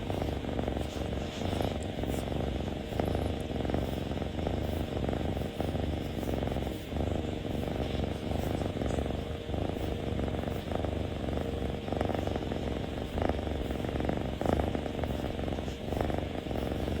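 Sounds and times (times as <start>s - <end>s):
cat purring: 0.0s - 17.0s.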